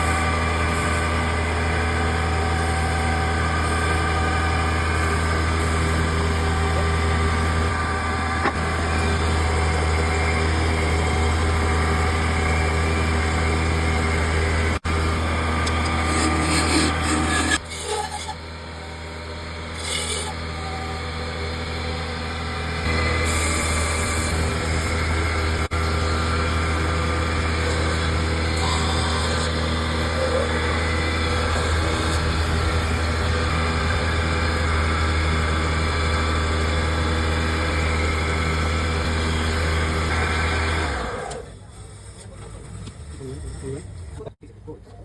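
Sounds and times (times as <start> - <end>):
power tool motor humming: 0.0 - 41.6
wood scraping: 2.8 - 18.4.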